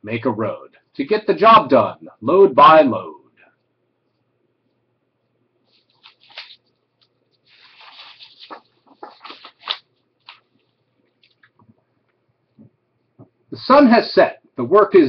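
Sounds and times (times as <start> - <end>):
paper page rustling and turning: 5.7 - 11.7.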